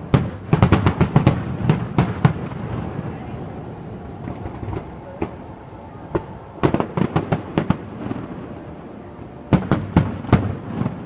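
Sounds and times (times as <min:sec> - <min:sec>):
fireworks bursting with sharp bangs: 0:00.0 - 0:11.0.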